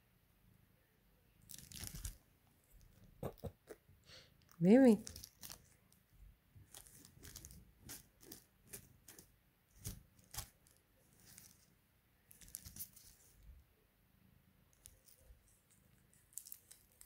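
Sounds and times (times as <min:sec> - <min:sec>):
faint small clicks and rattles: 0:14.7 - 0:17.0.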